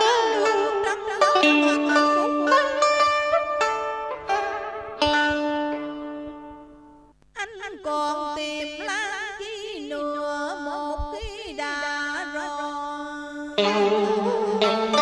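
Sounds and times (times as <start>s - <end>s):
string instruments playing melody: 0.0s - 7.1s, 13.6s - 15.0s.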